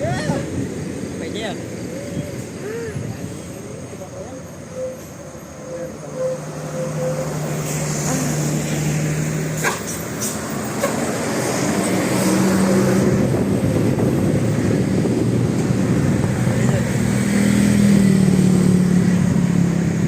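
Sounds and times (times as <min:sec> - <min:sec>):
bus engine running: 0:00.0 - 0:20.0.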